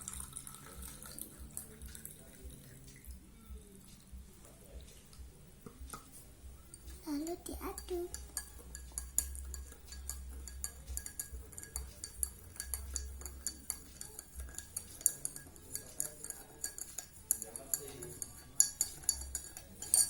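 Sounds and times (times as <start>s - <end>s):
spoon clinking in glass: 7.7s - 20.0s.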